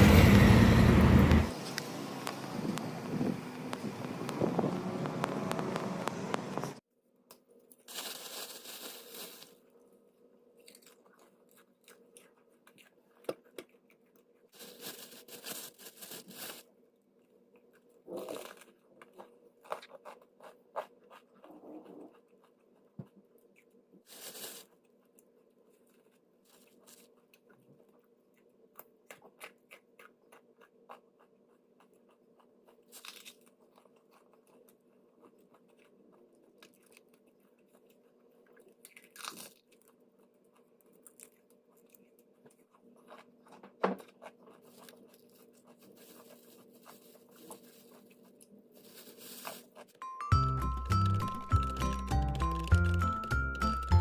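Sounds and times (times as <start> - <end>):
rustling or crunching: 7.7 - 9.6, 10.6 - 16.8, 23.6 - 28.0, 32.7 - 53.8
clicks and taps: 50.3 - 54.0.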